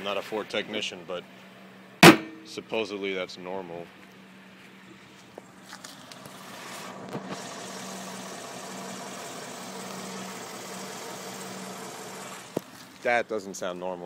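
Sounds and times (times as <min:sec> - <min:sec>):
abnormal engine noise: 0:03.9 - 0:13.0
car engine running: 0:05.4 - 0:13.0.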